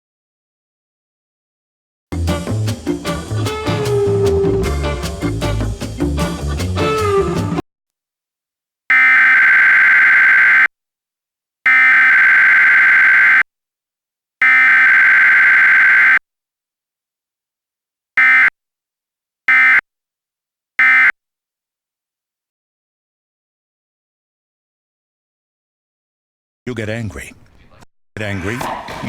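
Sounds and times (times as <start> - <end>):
digital data tone bursts: 8.9 - 10.7, 11.7 - 13.4, 14.4 - 16.2, 18.2 - 18.5, 19.5 - 19.8, 20.8 - 21.1.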